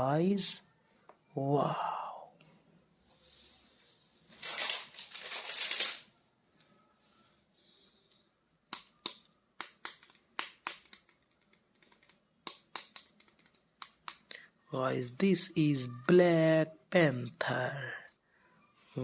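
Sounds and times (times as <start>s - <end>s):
plastic packaging crinkling: 4.3s - 6.2s
sharp plastic clicks: 8.7s - 14.3s.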